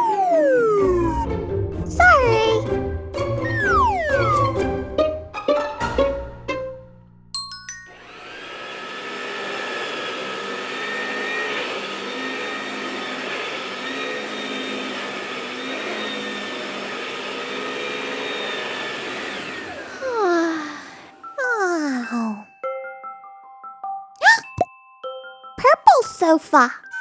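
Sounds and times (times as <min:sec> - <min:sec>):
falling electronic tones: 0:00.0 - 0:02.5, 0:03.2 - 0:04.9
toy vacuum cleaner whirring: 0:08.0 - 0:21.1.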